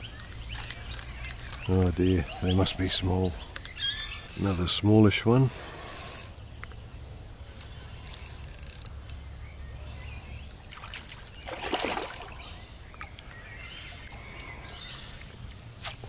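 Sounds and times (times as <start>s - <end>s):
birds chirping: 0.0s - 15.8s
fish splashing in water: 10.7s - 12.5s.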